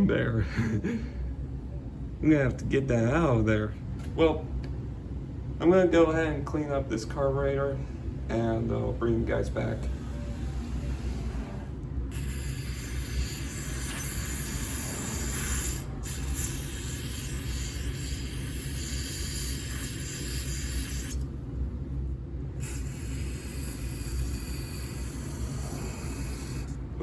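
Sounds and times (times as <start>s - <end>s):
steady low rumble: 0.0s - 16.9s, 21.2s - 27.0s
spray hissing: 12.1s - 21.2s, 22.6s - 26.8s.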